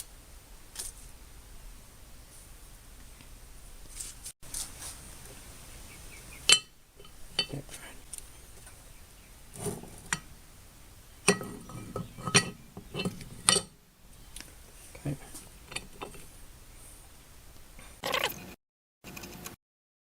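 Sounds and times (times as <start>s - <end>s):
metal vise parts clinking: 6.4s - 8.8s, 9.5s - 10.6s, 11.2s - 16.4s.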